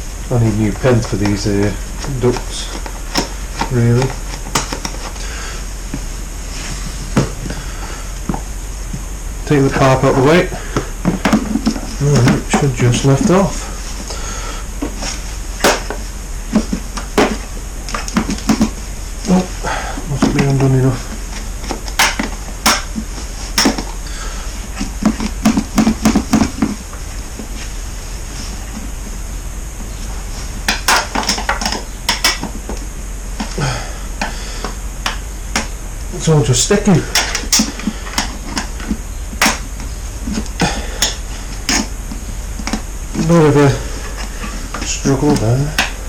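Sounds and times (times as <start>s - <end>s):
plastic airbox knocking and rattling: 0.7s - 5.2s, 9.8s - 13.6s, 14.8s - 18.8s, 24.8s - 26.8s.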